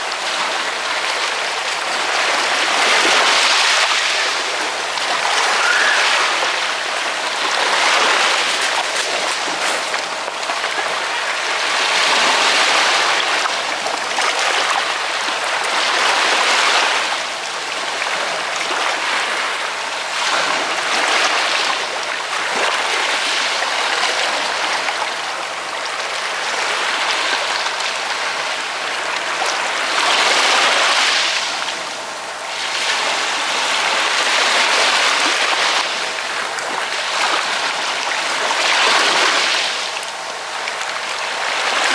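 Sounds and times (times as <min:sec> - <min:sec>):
ocean waves breaking on shore: 0:02.7 - 0:13.5.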